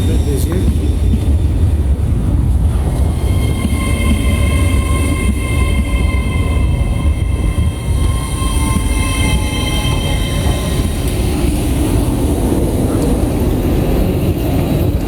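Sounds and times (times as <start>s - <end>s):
train rumbling: 0.0s - 15.0s
high electric whines: 2.7s - 12.7s.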